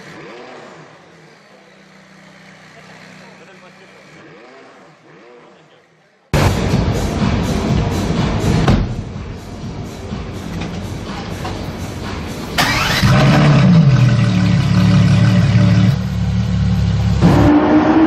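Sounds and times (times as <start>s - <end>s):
car engine starting and idling: 10.4s - 17.9s.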